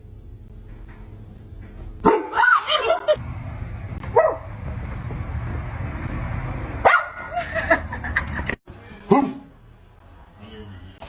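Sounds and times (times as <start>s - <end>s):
steady low rumble: 0.0s - 2.1s, 3.0s - 8.6s
dog barking: 2.0s - 2.6s, 6.8s - 7.2s.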